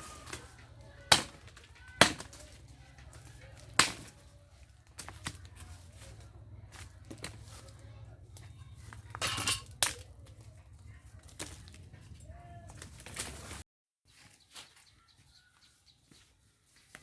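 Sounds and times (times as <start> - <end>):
blade chopping wood: 0.0 - 2.6, 3.6 - 4.2.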